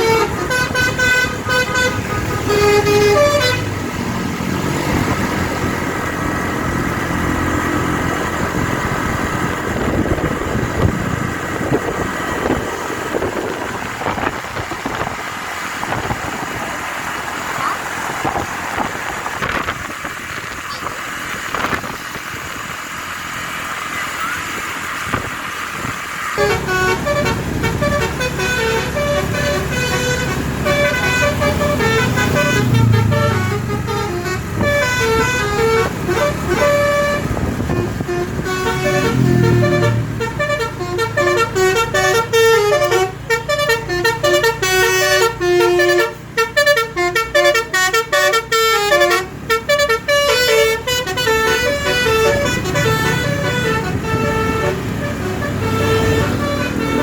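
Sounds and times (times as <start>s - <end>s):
bus air horn melody: 0.0s - 3.9s, 26.4s - 57.0s
low engine rumble: 0.0s - 57.0s.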